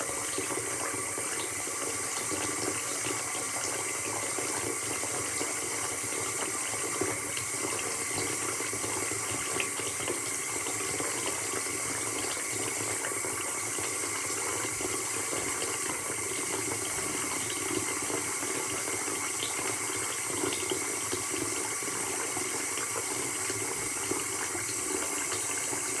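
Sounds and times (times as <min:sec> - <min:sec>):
tap water pouring into sink: 0:00.0 - 0:26.0.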